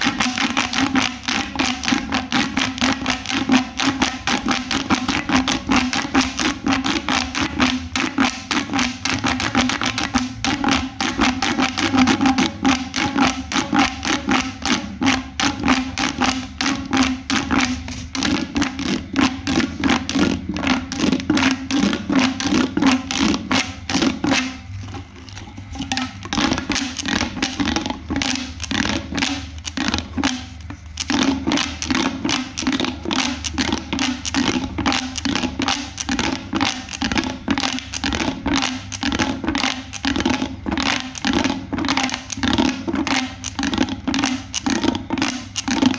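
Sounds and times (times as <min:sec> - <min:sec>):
low steady hum: 0:00.0 - 0:45.9
pop toy clicking and popping: 0:26.3 - 0:45.9.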